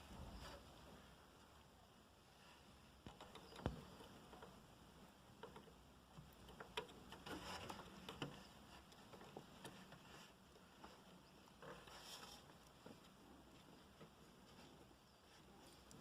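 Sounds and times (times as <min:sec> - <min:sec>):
small parts clicking and tapping: 0:03.0 - 0:09.9.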